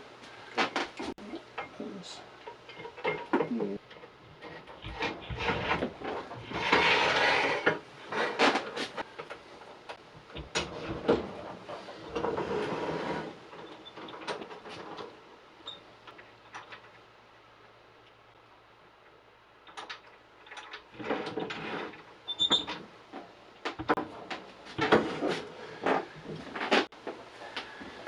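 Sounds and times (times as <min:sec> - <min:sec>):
rubbing of parts: 0:00.5 - 0:17.0.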